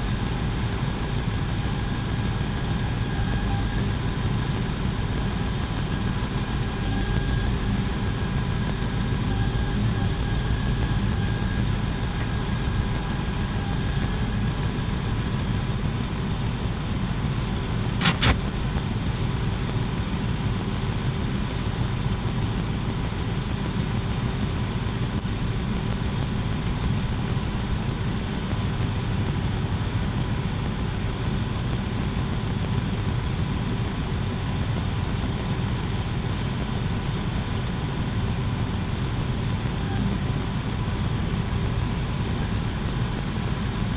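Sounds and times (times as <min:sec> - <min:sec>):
low mechanical rumble: 0:00.0 - 0:43.9
sharp click: 0:18.0 - 0:18.4.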